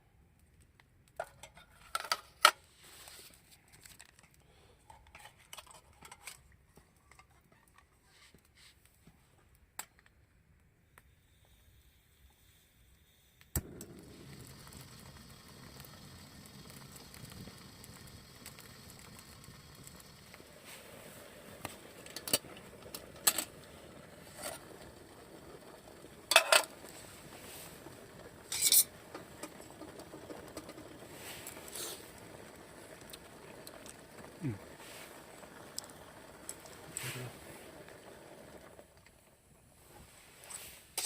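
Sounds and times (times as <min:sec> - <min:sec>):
steady background hiss: 0:08.4 - 0:41.0
cookware clinking: 0:26.3 - 0:26.8, 0:28.5 - 0:29.0.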